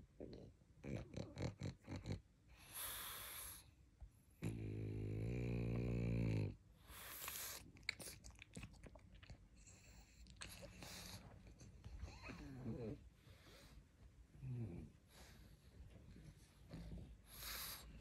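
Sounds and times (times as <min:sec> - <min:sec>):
dog snoring: 0:00.2 - 0:03.7, 0:04.4 - 0:07.6, 0:09.6 - 0:13.6, 0:14.4 - 0:15.4, 0:16.7 - 0:18.0.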